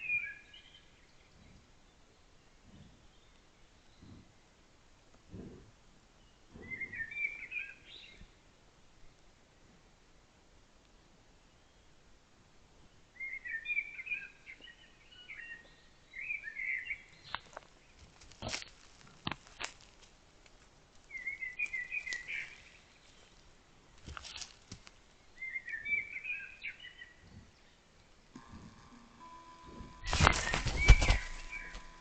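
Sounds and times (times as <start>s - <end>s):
songbird warbling: 30.0s - 32.0s.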